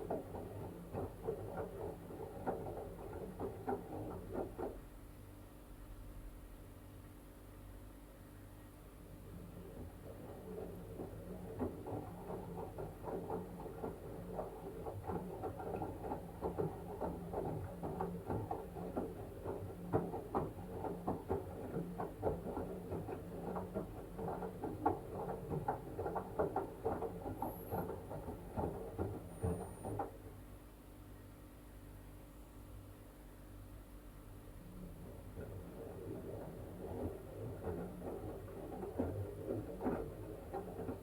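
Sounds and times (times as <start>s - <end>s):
washing machine drum tumbling: 0.0s - 4.9s, 9.1s - 30.4s, 34.4s - 41.0s
low motor hum: 34.1s - 41.0s
water sloshing and splashing: 34.6s - 41.0s.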